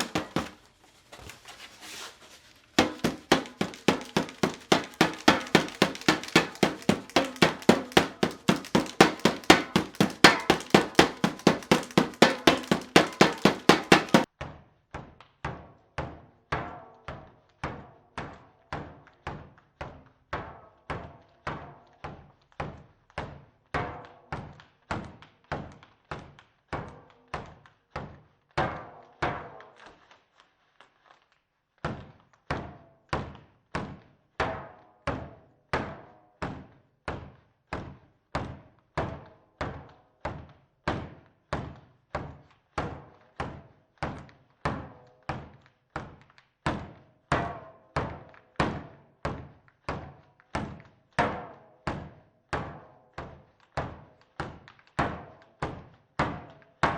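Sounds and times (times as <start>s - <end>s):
thunder sticks banging together: 2.8s - 14.3s.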